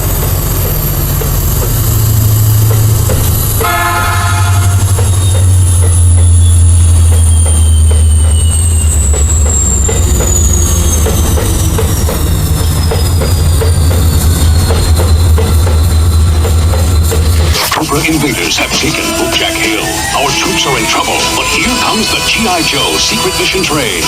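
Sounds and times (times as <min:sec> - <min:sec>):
train rumbling on rails: 0:00.0 - 0:24.0
wheels clickety-clack: 0:00.0 - 0:24.0.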